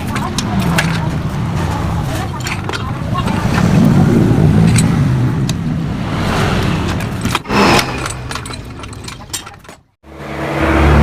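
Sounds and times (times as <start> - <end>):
metallic knocking and clattering: 0.0 - 3.9, 6.8 - 10.0.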